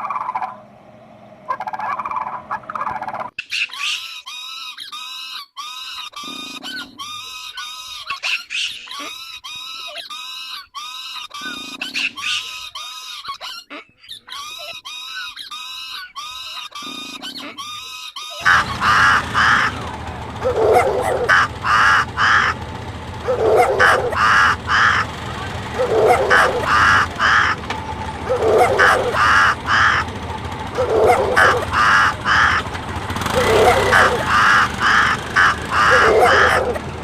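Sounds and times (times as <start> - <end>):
harsh animal call pulses: 0.0 - 3.4, 16.7 - 37.0
bird chattering calls: 1.5 - 37.0.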